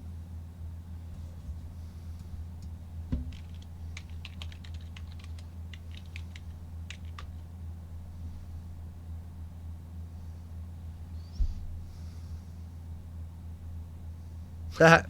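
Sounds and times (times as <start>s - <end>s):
steady low hum: 0.0s - 15.0s
knock: 3.1s - 3.4s
typing on computer keyboard: 3.2s - 7.4s.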